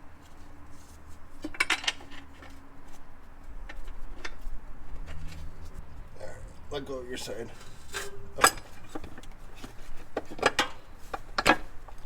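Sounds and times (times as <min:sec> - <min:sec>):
metal bolts and tools clinking: 0:07.5 - 0:09.3.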